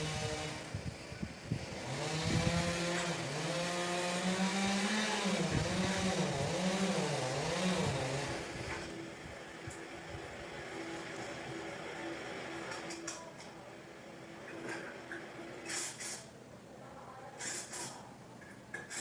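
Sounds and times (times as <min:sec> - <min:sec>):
chainsaw cutting: 0:00.0 - 0:09.0.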